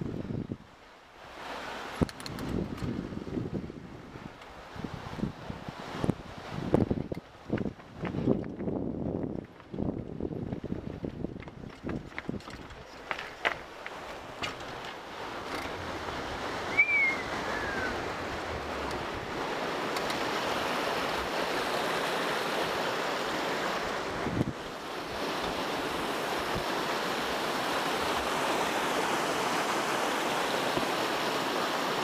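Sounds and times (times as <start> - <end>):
wind on microphone: 0.0 - 0.8, 1.4 - 29.9
bike tyres rolling on dirt: 7.4 - 16.4.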